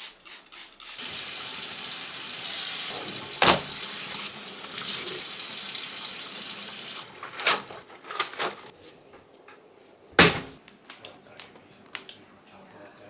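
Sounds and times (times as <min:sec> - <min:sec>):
tap water running into sink: 0:01.0 - 0:07.4.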